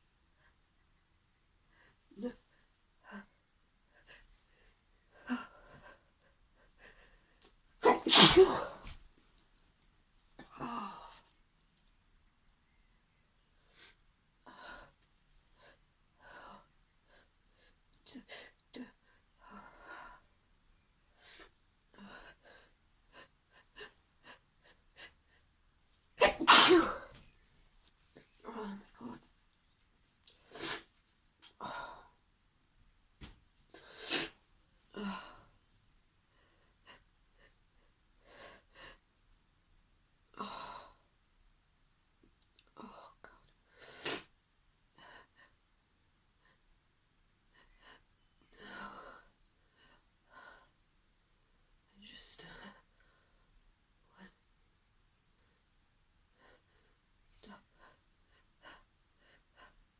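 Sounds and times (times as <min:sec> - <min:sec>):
woman sneezing: 0:07.8 - 0:08.9, 0:26.2 - 0:27.1.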